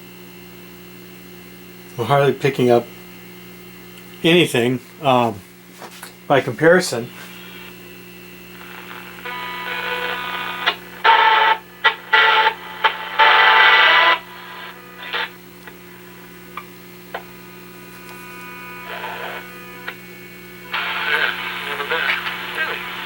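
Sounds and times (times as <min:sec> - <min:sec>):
steady hum: 0:00.0 - 0:23.0
radio crackles: 0:04.0 - 0:23.0
radio static bursts: 0:06.3 - 0:23.0
radio whistling tones: 0:08.6 - 0:17.3, 0:18.1 - 0:23.0.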